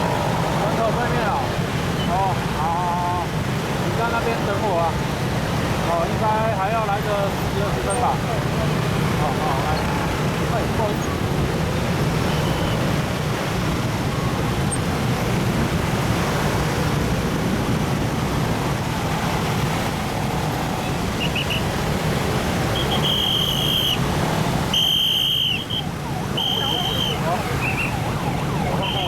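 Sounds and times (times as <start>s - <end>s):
traffic hum: 0.0s - 29.0s
car horn blasts: 22.8s - 24.0s, 24.7s - 25.6s.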